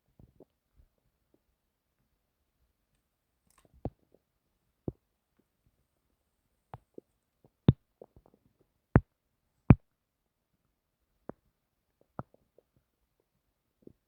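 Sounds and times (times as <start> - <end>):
stomach pops and clicks: 11.2 - 12.8.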